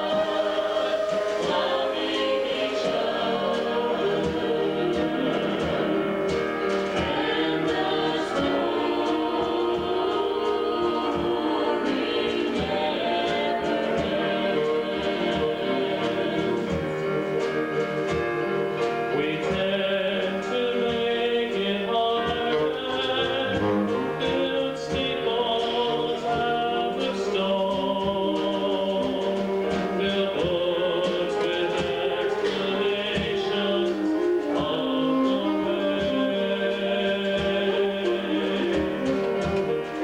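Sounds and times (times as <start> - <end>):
musical backing: 0.0 - 40.0
vocal group singing in harmony: 0.0 - 40.0.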